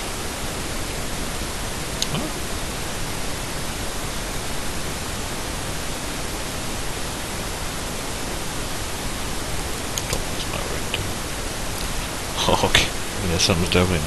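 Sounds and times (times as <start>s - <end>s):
steady background hiss: 0.0s - 14.0s.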